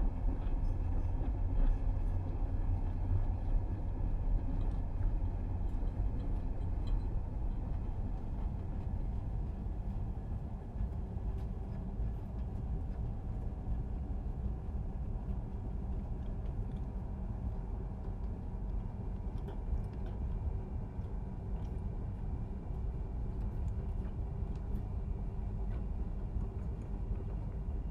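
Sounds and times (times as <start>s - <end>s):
train rumbling on rails: 6.0s - 16.1s.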